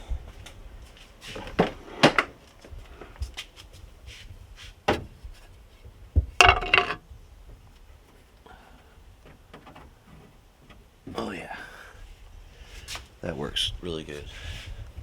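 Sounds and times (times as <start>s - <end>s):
wood and metal knocks: 6.2s - 7.0s.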